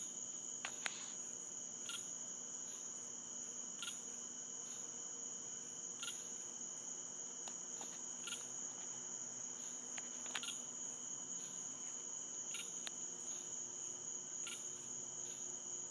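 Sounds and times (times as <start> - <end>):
insect chirp: 0.0 - 15.9
insect trilling: 3.8 - 4.9, 6.0 - 6.4, 7.8 - 8.7, 9.5 - 11.7, 12.4 - 13.6, 14.3 - 15.5.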